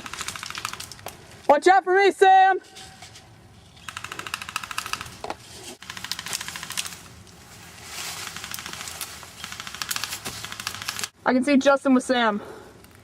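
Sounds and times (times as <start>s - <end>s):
airsoft guns firing bursts: 0.0s - 1.0s, 3.9s - 5.2s, 5.8s - 7.0s, 8.2s - 11.2s.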